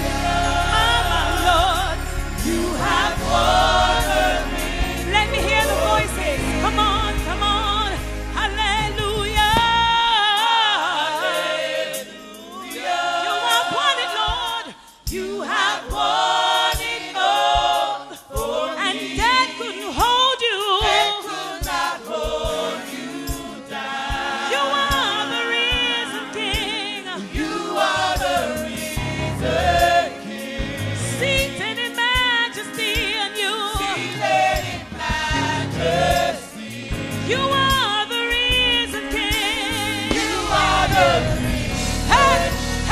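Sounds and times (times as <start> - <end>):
gospel choir singing: 0.0 - 42.9
steady beat: 34.6 - 42.9.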